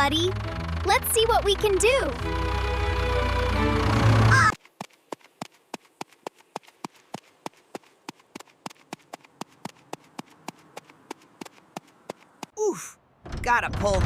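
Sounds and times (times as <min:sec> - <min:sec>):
music: 0:00.0 - 0:04.4.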